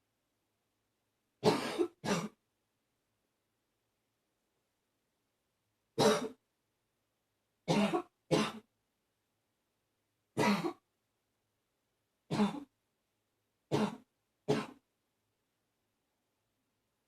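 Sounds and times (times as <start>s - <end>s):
woman coughing: 1.4s - 2.4s, 6.0s - 6.4s, 7.7s - 8.6s, 10.4s - 10.8s.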